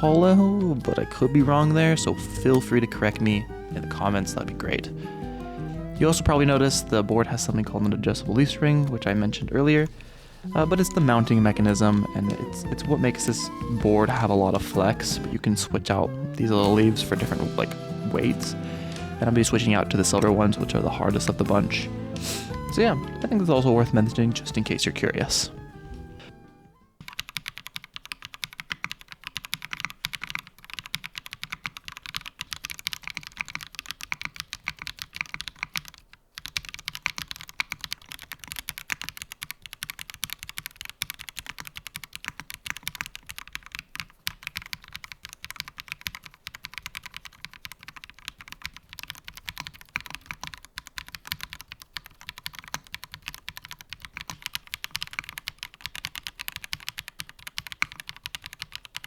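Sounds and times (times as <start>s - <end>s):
mechanical keyboard typing: 27.0s - 59.0s.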